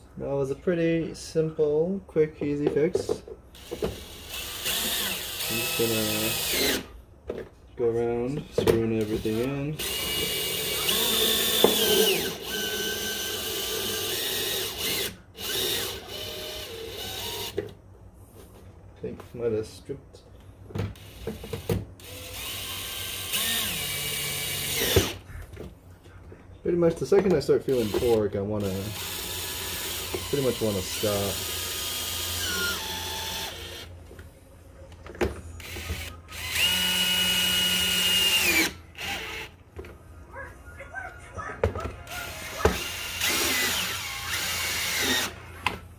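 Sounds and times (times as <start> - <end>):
power drill driving screws: 3.6 - 6.9, 9.0 - 17.6, 21.0 - 25.2, 27.7 - 33.9, 35.6 - 39.5, 42.1 - 45.4.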